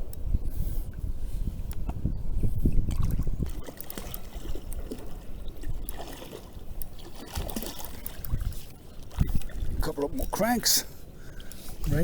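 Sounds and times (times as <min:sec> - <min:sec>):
wind buffeting microphone: 0:00.0 - 0:10.3
water trickling and lapping: 0:00.8 - 0:12.0
small water splashes: 0:02.8 - 0:10.4.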